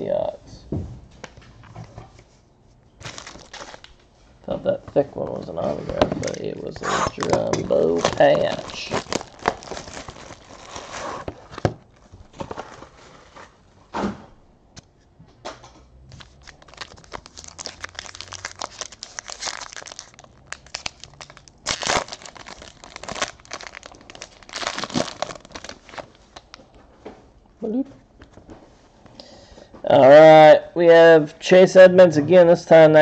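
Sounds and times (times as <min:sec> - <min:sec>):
wrapping crinkling and tearing: 0:03.0 - 0:04.0, 0:06.2 - 0:13.4, 0:16.1 - 0:26.6.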